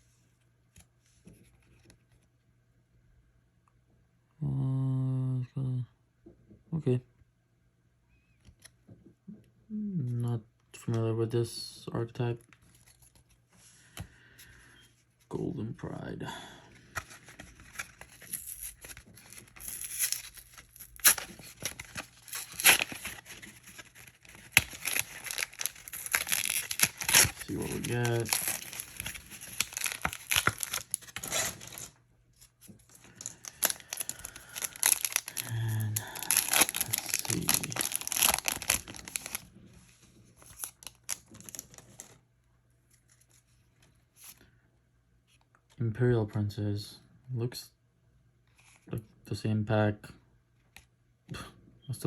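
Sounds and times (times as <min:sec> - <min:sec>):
cards clicking and rustling: 0:16.8 - 0:39.5
foil wrapper crinkling: 0:16.8 - 0:39.5, 0:40.4 - 0:42.2
foil wrapper ripping: 0:17.0 - 0:31.9, 0:32.9 - 0:39.4, 0:40.4 - 0:42.0.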